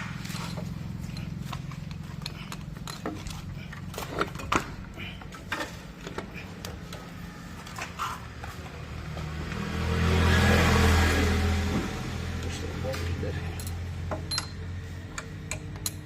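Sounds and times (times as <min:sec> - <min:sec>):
steady low hum: 0:00.0 - 0:09.6
tools clinking: 0:00.3 - 0:04.8, 0:13.4 - 0:16.0.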